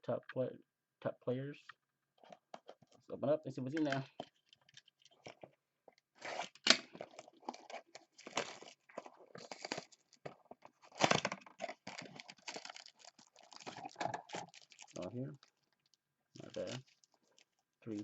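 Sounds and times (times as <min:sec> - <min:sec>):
foil pack wrappers ripping: 0:06.2 - 0:10.2, 0:10.8 - 0:15.7, 0:16.4 - 0:17.4.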